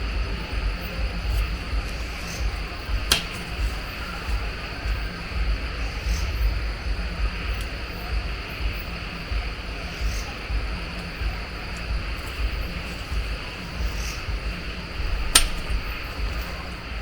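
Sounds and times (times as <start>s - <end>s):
crickets and insects chirping: 0.0s - 17.0s
low uneven rumble: 0.0s - 17.0s
sharp click: 3.1s - 3.5s, 15.3s - 15.9s.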